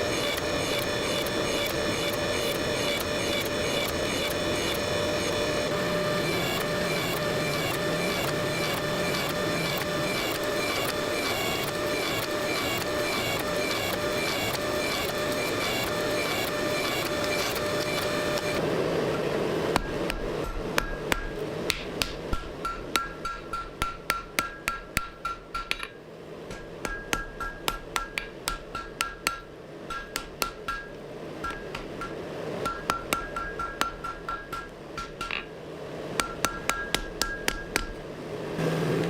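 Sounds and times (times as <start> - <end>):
steady machine noise: 0.0 - 20.4
hammer striking steel on anvil: 19.8 - 35.5, 36.2 - 38.0.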